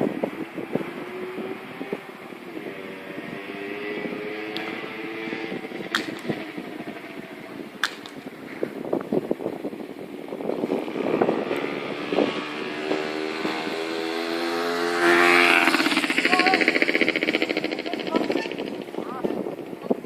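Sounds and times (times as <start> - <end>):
distant engine humming: 11.0 - 19.7.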